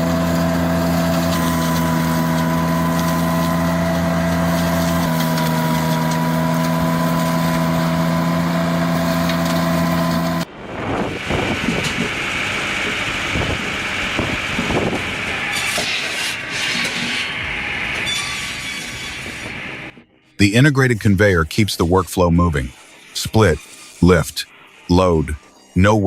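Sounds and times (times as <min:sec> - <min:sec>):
motor humming: 0:00.0 - 0:12.1
noisy machine running: 0:00.0 - 0:26.0.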